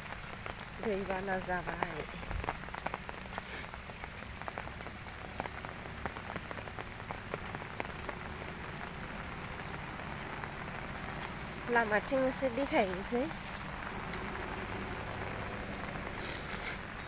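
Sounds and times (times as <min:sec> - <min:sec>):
heavy rain: 0:00.0 - 0:17.0
raindrops clicking on a surface: 0:00.0 - 0:17.0.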